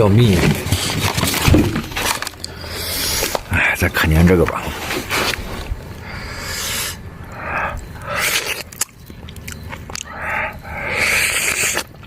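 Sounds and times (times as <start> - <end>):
person biting and chewing food: 1.7 - 3.5, 5.1 - 12.0.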